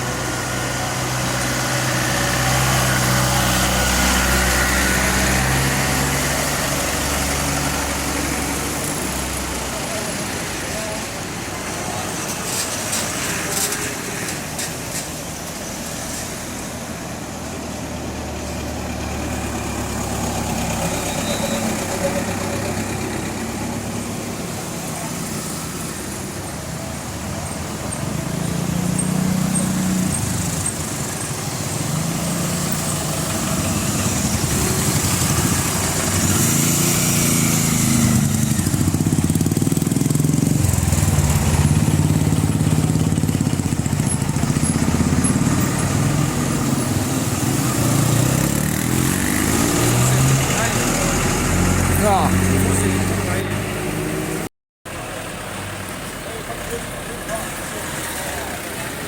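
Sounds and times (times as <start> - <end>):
vehicle engines passing: 0.0 - 59.0
people's voices: 8.7 - 13.9, 50.4 - 53.8, 55.0 - 59.0.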